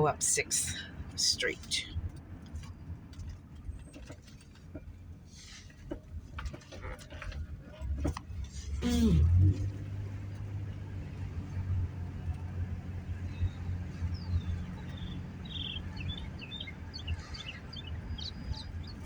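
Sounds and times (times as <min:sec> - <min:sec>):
car engine and road noise: 0:00.0 - 0:19.0
high chirping bird calls: 0:13.3 - 0:19.0.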